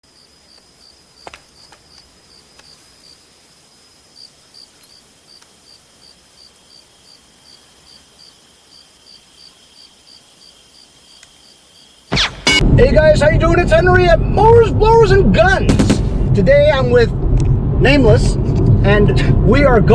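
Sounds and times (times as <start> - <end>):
insect chirping: 0.0 - 12.6.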